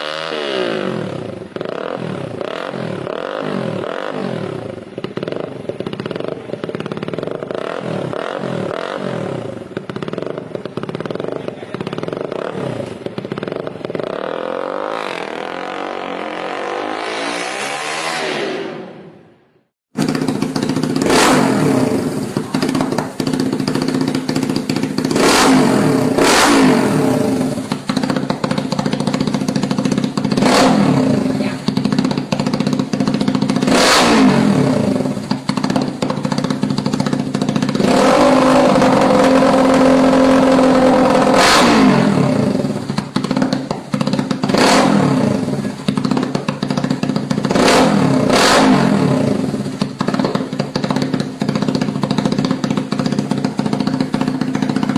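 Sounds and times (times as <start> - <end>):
exhaust cracks: 0.0 - 54.9
motorcycle engine revving: 0.0 - 54.9.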